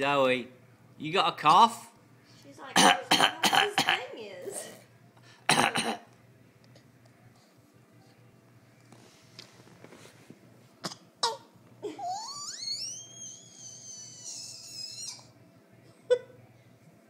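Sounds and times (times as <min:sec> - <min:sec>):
high whistle-like pet call: 0:12.2 - 0:15.3.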